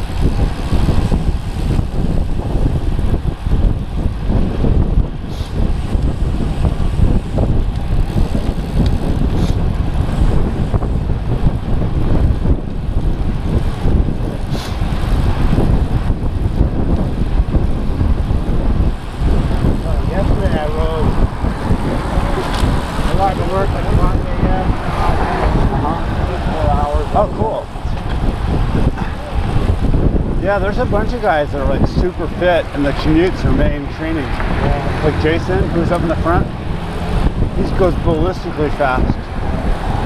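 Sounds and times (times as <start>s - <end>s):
wind rushing over microphone: 0.0s - 40.0s.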